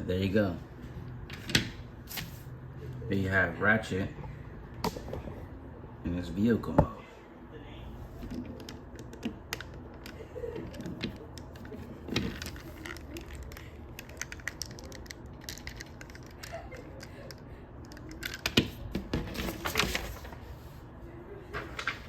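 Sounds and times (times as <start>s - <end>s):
plastic toy parts clicking: 8.3s - 18.7s.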